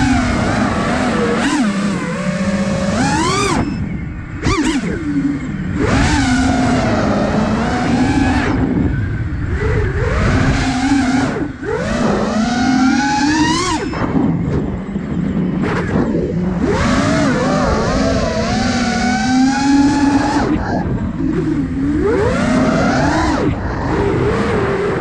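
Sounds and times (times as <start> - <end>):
quadcopter motors whining: 0.0 - 25.0.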